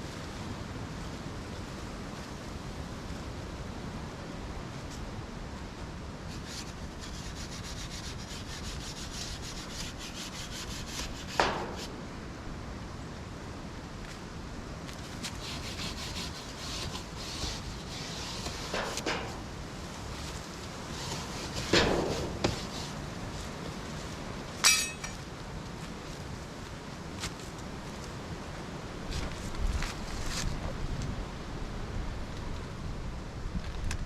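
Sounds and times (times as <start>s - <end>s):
rasping strokes on wood: 6.5s - 11.9s, 15.4s - 19.1s.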